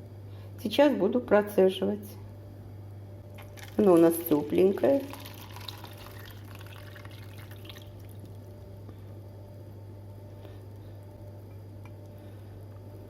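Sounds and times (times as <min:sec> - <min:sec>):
steady low hum: 0:00.0 - 0:13.0
milk trickling through a sieve: 0:03.3 - 0:08.6.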